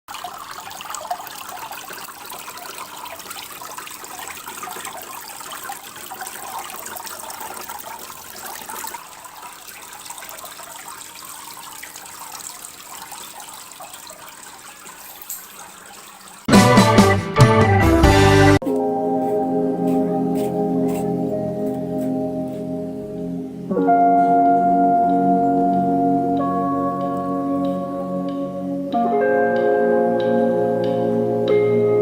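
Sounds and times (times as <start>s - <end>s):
fountain water trickling and splashing: 0.1s - 16.5s.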